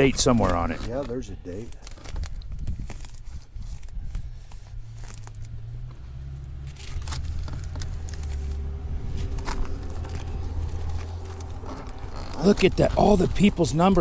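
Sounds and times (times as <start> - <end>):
pages rustling: 0.0 - 14.0
vehicle engine running: 3.7 - 14.0.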